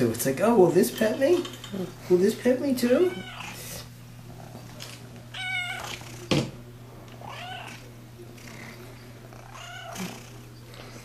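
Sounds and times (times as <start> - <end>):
steady low hum: 0.0 - 11.0
cat meowing: 3.1 - 3.6, 5.3 - 6.2, 7.2 - 7.9, 9.4 - 10.1.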